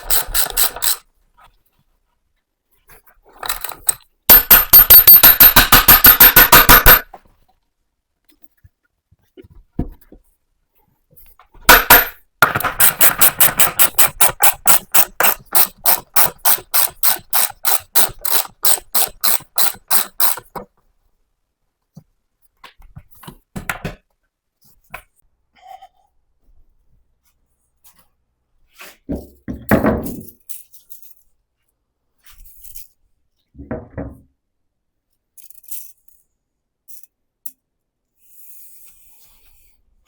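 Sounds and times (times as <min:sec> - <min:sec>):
tool working in rapid strokes: 0:00.0 - 0:01.0, 0:03.4 - 0:07.0, 0:11.7 - 0:20.5.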